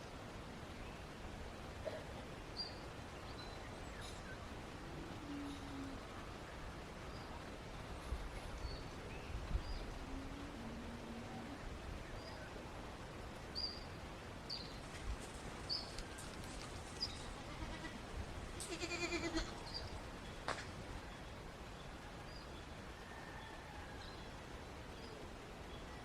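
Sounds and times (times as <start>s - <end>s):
steady outdoor background: 0.0s - 26.0s
goat or sheep bleating: 17.3s - 18.0s, 18.6s - 19.6s.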